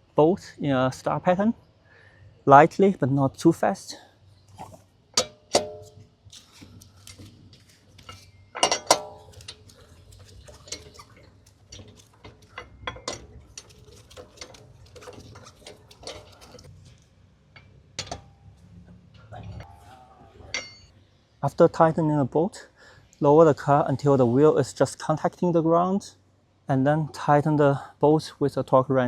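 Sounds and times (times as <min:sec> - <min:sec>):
wrench clinking on metal: 0:08.0 - 0:09.7, 0:11.7 - 0:16.7, 0:20.5 - 0:20.9.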